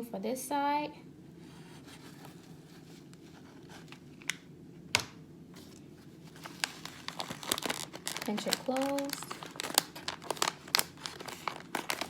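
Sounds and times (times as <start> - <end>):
steady low hum: 0.0 - 12.0
paper and foil bag rustling: 5.6 - 12.0.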